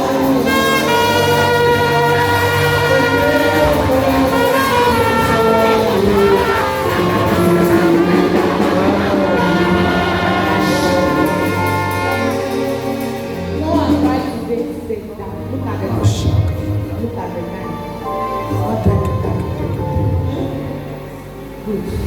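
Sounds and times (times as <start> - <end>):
brass instruments playing chords: 0.0 - 14.6.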